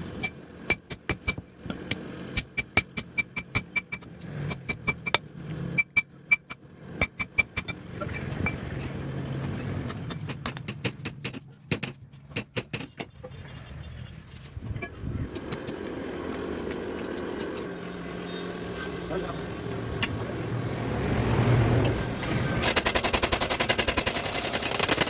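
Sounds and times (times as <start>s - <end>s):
hammer striking iron: 0.2s - 5.2s, 5.8s - 8.2s, 9.6s - 13.1s.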